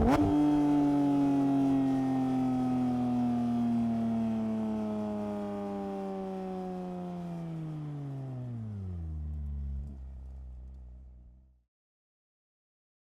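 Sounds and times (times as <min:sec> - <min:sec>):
car engine revving down to idle: 0:00.0 - 0:02.2.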